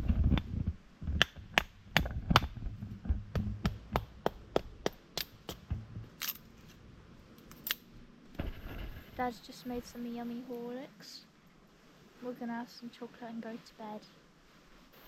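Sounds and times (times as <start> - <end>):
dull wood thuds: 0.0 - 6.2
axe chopping firewood: 0.3 - 6.4.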